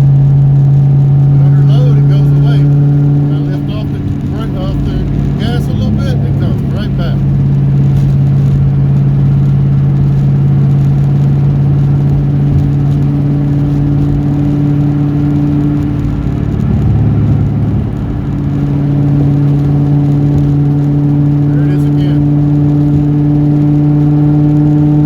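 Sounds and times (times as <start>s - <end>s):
car engine running: 0.0s - 25.0s.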